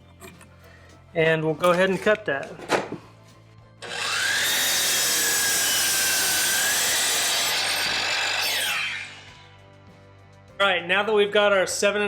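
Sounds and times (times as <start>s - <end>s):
power saw cutting wood: 3.8s - 9.5s.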